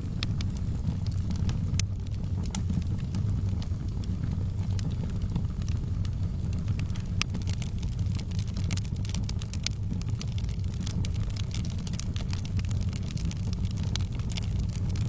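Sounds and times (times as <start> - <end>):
fire crackles and pops: 0.0 - 15.0
low rumble of flames: 0.0 - 15.0.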